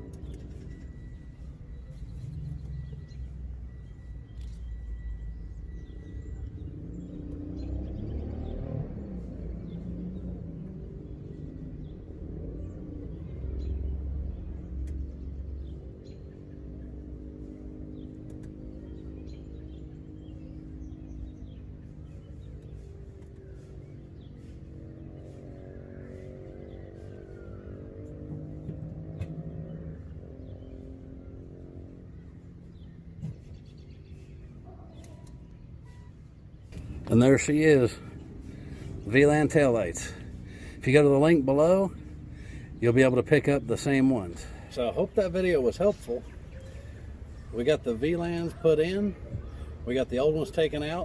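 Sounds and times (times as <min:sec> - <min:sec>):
faint bird chirps: 0:00.0 - 0:10.3, 0:29.4 - 0:40.8, 0:43.8 - 0:50.7
steady low rumble: 0:36.7 - 0:48.1
car engine idling: 0:36.7 - 0:51.0.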